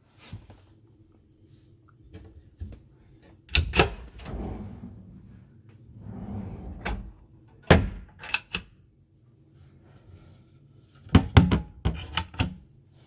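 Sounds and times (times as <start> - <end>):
drawers sliding: 3.6 - 7.2.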